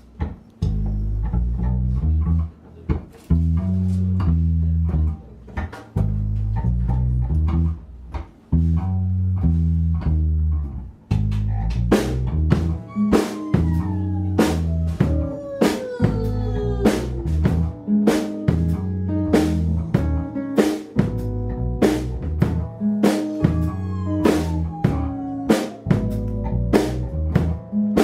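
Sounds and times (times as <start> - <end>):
guitar: 0.0 - 28.0
plucked bass line: 0.6 - 2.6, 3.3 - 28.0
drums and cymbal hits: 11.9 - 18.8, 19.4 - 28.0.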